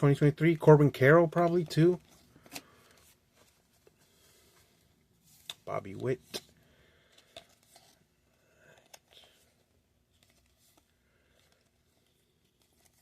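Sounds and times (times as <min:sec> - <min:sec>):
trading cards being handled: 0:00.4 - 0:13.0.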